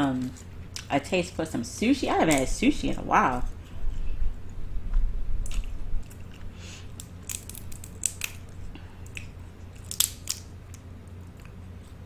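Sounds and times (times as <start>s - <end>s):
wet chewing and mouth smacks: 5.4s - 12.0s.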